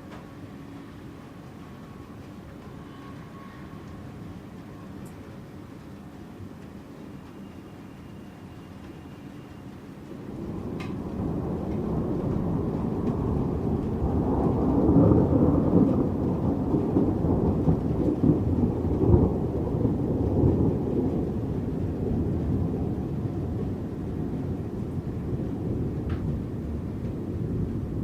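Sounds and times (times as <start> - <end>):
rolling thunder rumble: 10.0 - 28.0.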